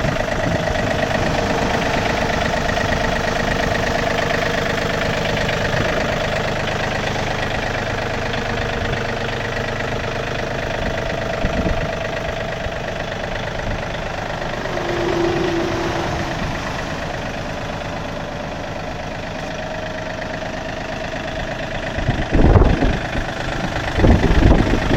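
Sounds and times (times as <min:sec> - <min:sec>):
diesel engine idling: 0:00.0 - 0:24.9
short steady tone: 0:14.0 - 0:18.6.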